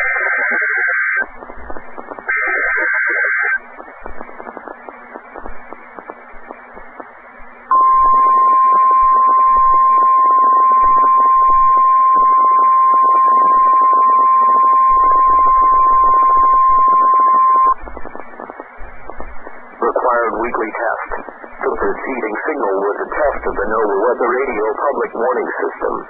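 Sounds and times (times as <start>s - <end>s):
radio static: 0.0s - 26.0s
steady warning alarm tone: 7.6s - 22.0s.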